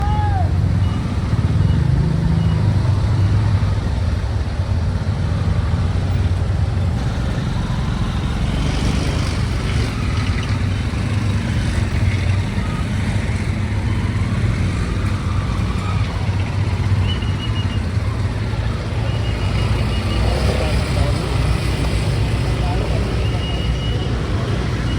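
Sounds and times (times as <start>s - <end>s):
car and motorcycle engines: 0.0s - 24.9s.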